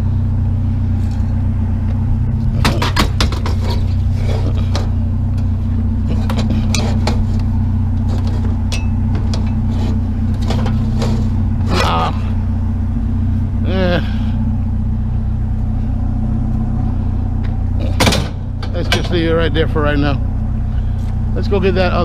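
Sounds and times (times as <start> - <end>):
vehicle engine idling: 0.0 - 22.0
knocks and rattles: 2.4 - 12.0, 17.8 - 19.4.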